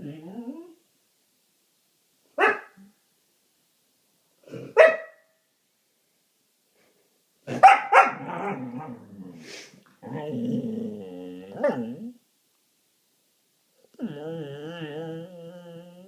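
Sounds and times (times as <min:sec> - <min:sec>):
dog barking: 0:02.4 - 0:02.9, 0:04.6 - 0:05.3, 0:07.5 - 0:09.0
dog yelp: 0:02.4 - 0:02.9, 0:04.8 - 0:05.2, 0:07.5 - 0:08.8
dog grumbling: 0:08.2 - 0:12.2
dog whining: 0:13.9 - 0:16.0.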